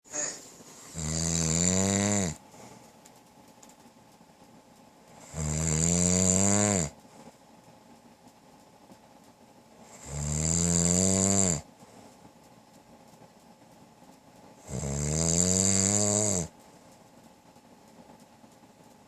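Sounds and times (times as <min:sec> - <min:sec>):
man snoring loudly: 0:00.1 - 0:02.4, 0:05.2 - 0:07.0, 0:09.9 - 0:11.7, 0:14.7 - 0:16.5.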